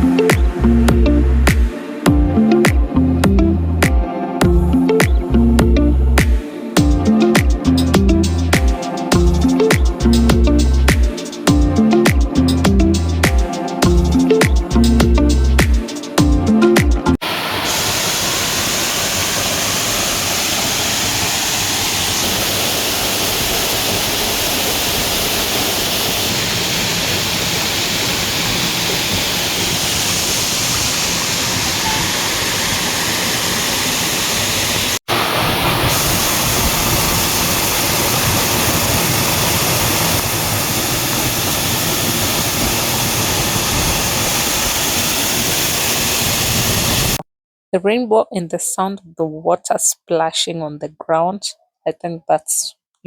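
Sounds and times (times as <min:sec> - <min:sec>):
waterfall splashing: 0:17.2 - 0:47.2.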